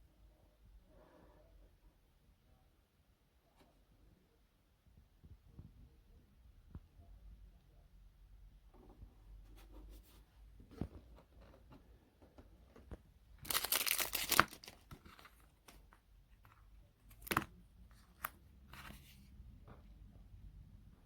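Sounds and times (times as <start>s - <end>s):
plastic crinkling rustle: 13.4s - 15.4s.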